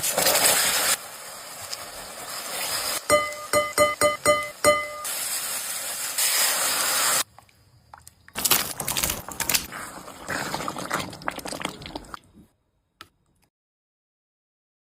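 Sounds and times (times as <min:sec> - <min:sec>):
food sizzling in a hot pan: 0:00.0 - 0:07.3
music notes: 0:03.1 - 0:05.1.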